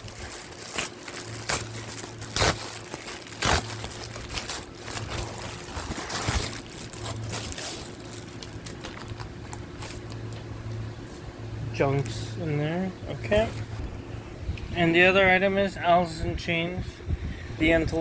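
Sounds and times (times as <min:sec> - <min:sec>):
packaging rustling and crinkling: 0:00.0 - 0:10.9
steady low hum: 0:00.0 - 0:18.0.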